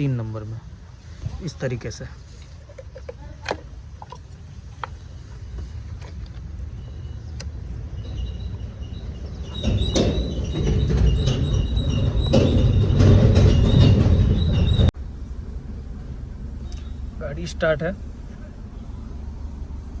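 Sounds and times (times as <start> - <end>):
engine running rough: 4.0 - 20.0.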